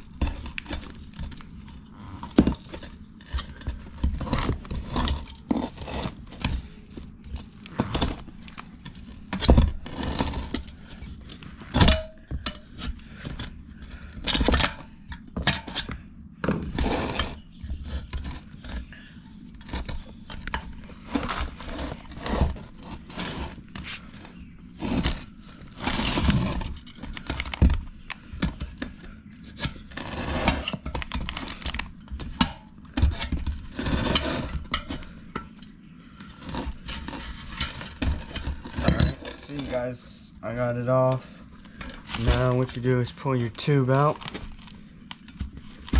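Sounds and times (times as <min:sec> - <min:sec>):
metal tire spoons clinking on rim: 0:38.8 - 0:39.6.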